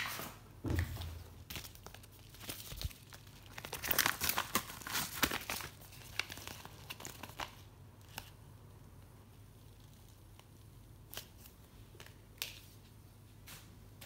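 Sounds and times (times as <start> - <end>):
packaging crinkling and tearing: 1.0 - 8.4.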